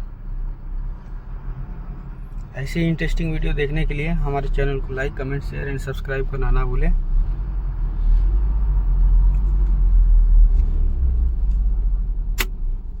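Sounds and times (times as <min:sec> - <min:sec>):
sharp click: 0:12.4 - 0:12.6.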